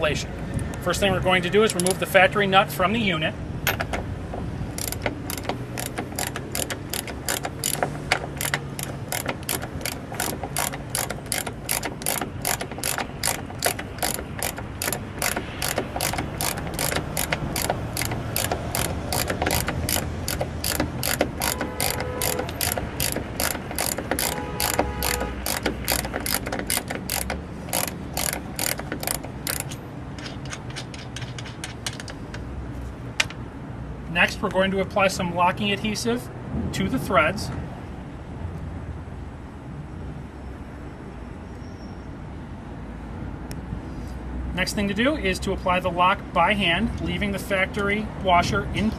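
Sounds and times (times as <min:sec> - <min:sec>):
ratchet wrench clicking: 0:01.6 - 0:02.0, 0:03.7 - 0:32.4.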